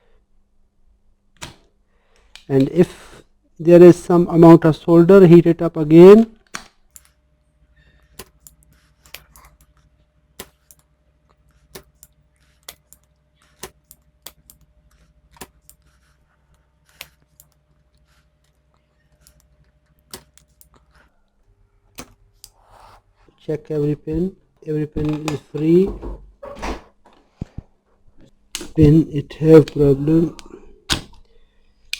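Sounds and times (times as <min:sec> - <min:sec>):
faint steady hum: 0:00.0 - 0:31.9.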